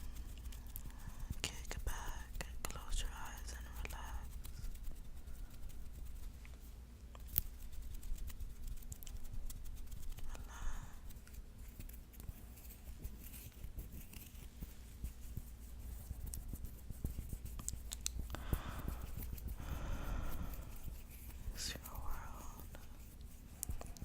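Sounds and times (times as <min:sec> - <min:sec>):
fingernails scratching skin: 0:00.1 - 0:06.6, 0:07.2 - 0:24.0
soft breath: 0:10.3 - 0:11.1, 0:18.3 - 0:23.0.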